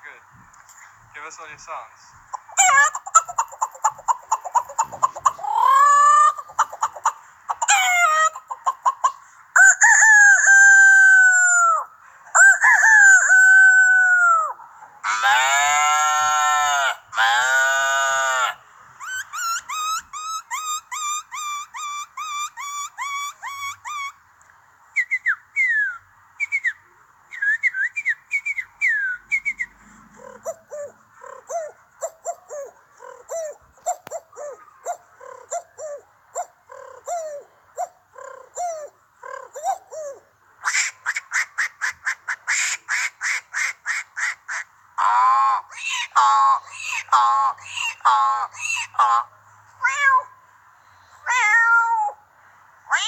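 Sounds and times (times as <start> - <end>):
man imitating bird calls: 1.2 - 24.2, 27.3 - 40.2, 45.0 - 50.3.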